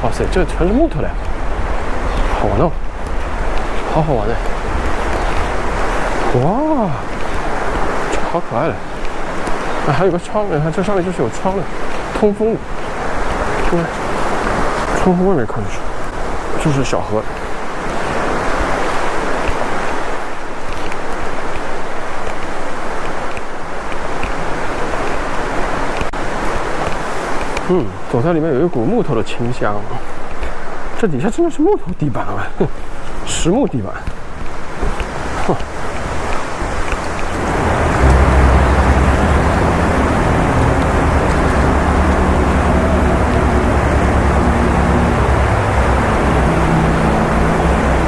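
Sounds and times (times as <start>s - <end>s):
vehicle engine rumbling: 0.0s - 16.7s, 34.3s - 48.0s
river water rushing through rapids: 0.0s - 28.8s, 32.4s - 48.0s.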